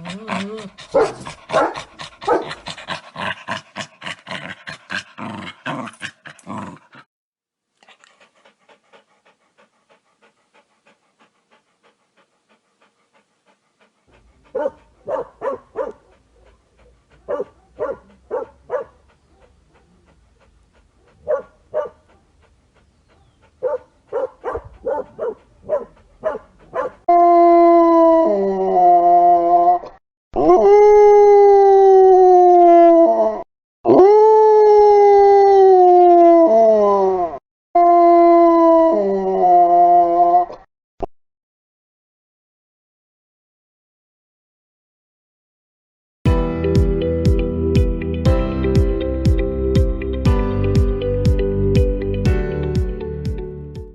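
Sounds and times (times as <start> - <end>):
dog panting: 0.0 - 7.1, 7.8 - 27.1
dog barking: 0.9 - 2.6, 14.5 - 16.2, 17.2 - 19.0, 21.1 - 22.3, 23.6 - 27.0.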